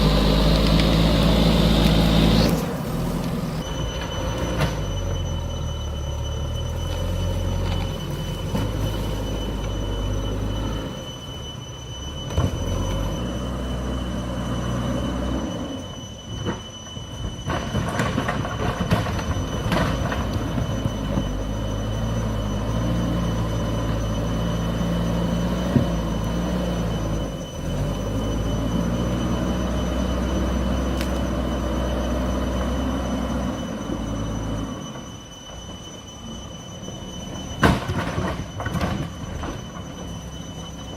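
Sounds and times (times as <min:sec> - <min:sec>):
diesel engine under load: 0:00.0 - 0:40.9
high-pitched whine: 0:00.0 - 0:40.9.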